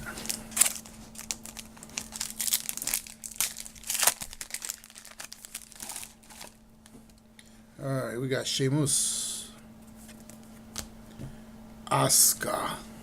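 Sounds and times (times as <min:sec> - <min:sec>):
plastic wrapper crinkling and tearing: 0:00.2 - 0:07.2.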